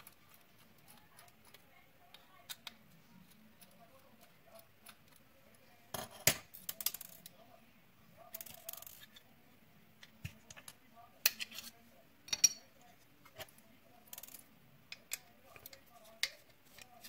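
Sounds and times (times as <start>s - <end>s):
small parts clicking and clattering: 5.9s - 7.3s, 8.3s - 9.2s, 14.0s - 17.0s.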